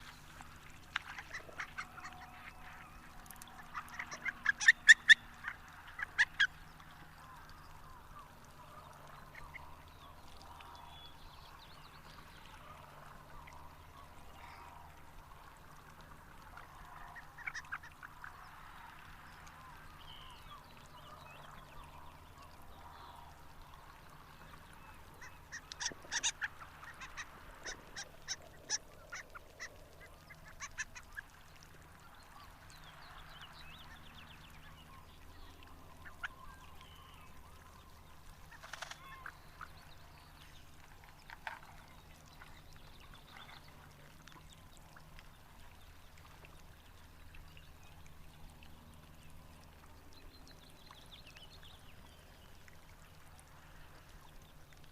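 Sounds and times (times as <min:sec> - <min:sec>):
duck squeaky calls: 0:03.7 - 0:06.5, 0:25.8 - 0:29.2.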